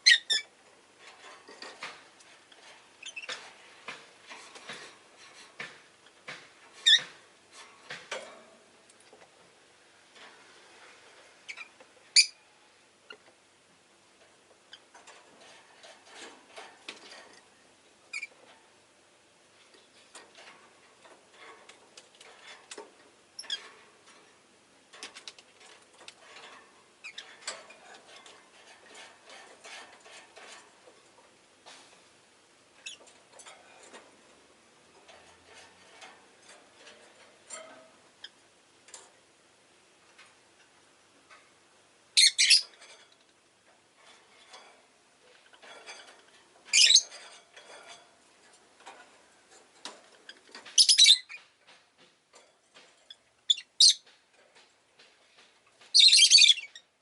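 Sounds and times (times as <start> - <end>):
soft clicks and scratches: 32.9 - 38.1
lovebirds chirping: 42.2 - 42.6, 46.8 - 47.1, 50.8 - 51.4, 56.0 - 56.8.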